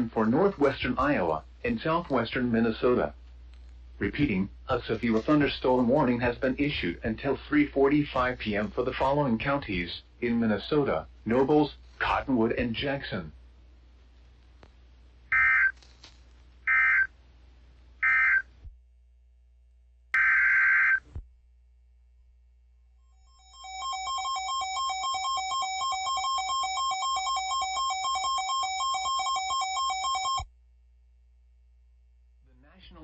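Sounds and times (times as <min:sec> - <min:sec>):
pulsing two-tone electronic alert: 0:23.2 - 0:30.4.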